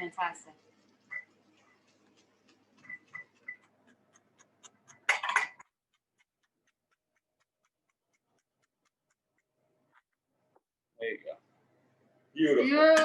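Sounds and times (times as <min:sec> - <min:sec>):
knife clatter: 0:04.9 - 0:06.3.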